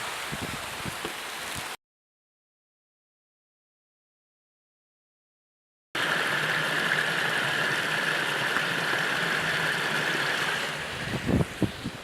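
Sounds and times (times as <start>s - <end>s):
rushing falling water: 0.0s - 1.8s, 6.0s - 12.0s.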